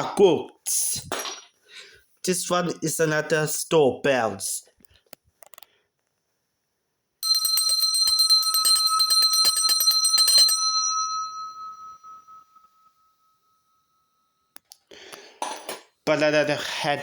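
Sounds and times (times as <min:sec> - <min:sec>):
metal hand bell ringing: 0:07.2 - 0:13.4.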